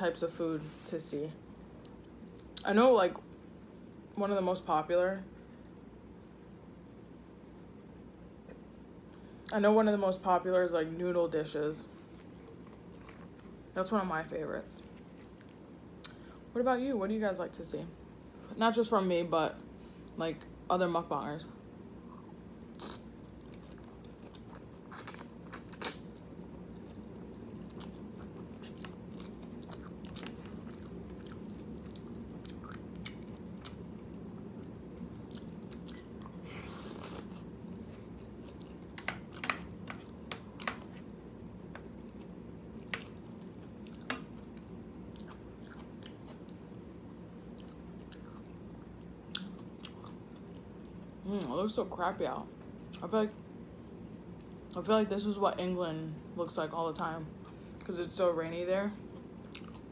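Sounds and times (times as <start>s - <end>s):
chewing noodles: 22.1s - 33.8s, 59.1s - 59.9s.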